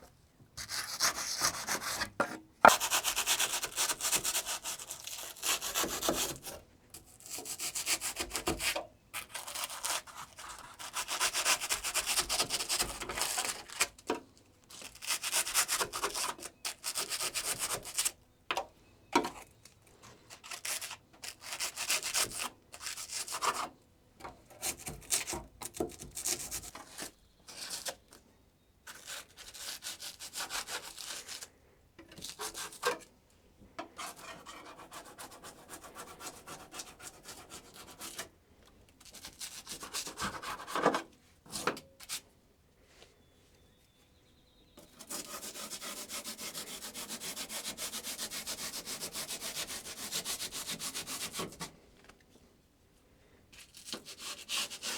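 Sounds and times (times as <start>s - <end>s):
hand scraping and rubbing: 0.6s - 3.8s.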